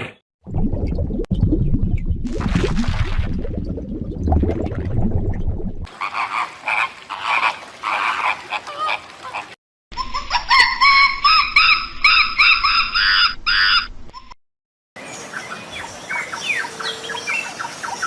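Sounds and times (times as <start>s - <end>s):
chicken calling: 10.0s - 14.3s.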